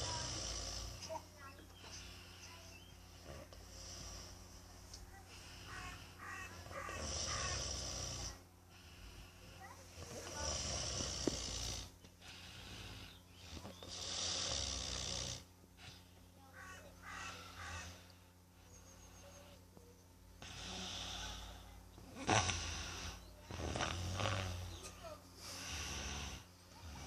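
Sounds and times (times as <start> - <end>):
loud snoring: 0.0 - 1.2, 3.0 - 4.4, 5.7 - 9.3, 10.0 - 15.5, 20.4 - 27.0.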